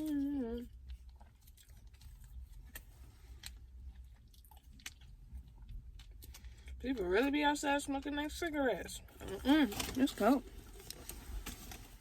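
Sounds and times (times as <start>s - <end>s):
person chewing: 0.0s - 6.8s
low steady rumble: 0.0s - 12.0s.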